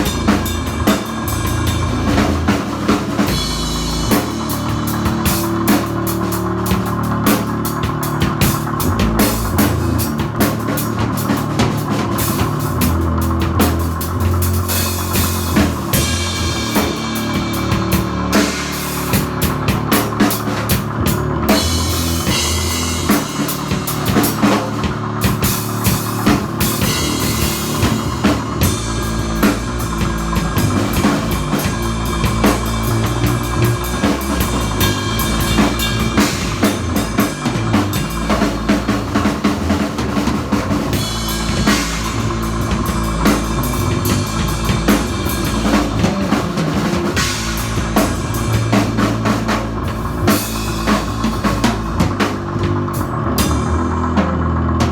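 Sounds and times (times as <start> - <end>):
bass notes: 0.0 - 54.9
drum kit beat: 0.0 - 54.9
rock band music: 0.0 - 54.9.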